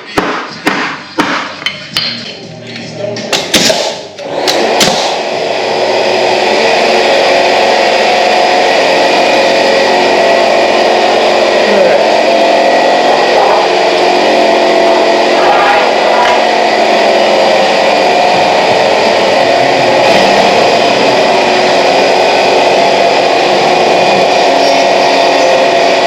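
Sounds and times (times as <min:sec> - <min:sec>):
sharp knocks: 0:00.1 - 0:02.2
motor droning: 0:04.2 - 0:26.0.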